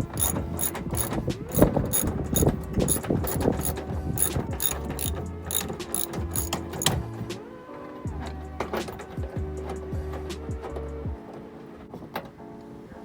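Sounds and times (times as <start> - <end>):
socket ratchet wrench clicking: 0.0 - 7.0.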